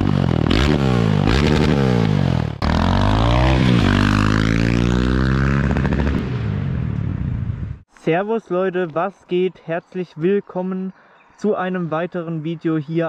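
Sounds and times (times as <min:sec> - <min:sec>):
motorcycle engine revving hard: 0:00.0 - 0:07.4.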